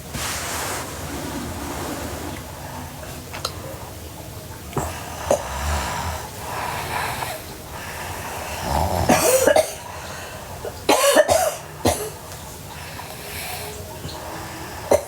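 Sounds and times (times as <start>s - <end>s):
girl snoring: 4.9s - 9.6s.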